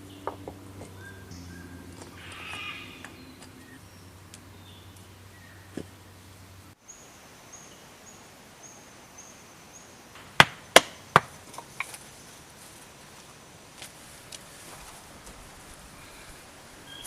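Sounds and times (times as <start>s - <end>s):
tool striking wood: 10.2s - 11.4s.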